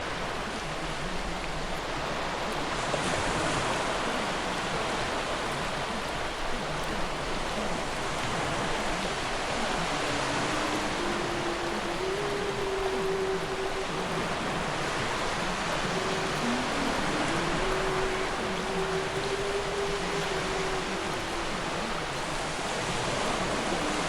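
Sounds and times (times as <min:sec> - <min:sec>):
ocean surf: 0:00.0 - 0:24.0
faint held tone: 0:09.6 - 0:24.0.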